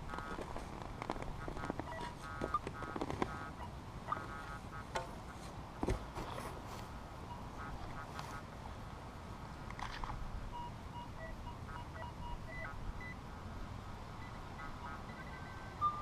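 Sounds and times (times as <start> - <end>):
low rumble of wind: 0.0 - 16.0
metal detector beeps: 1.5 - 4.9, 7.3 - 8.4, 10.6 - 13.2, 14.2 - 16.0.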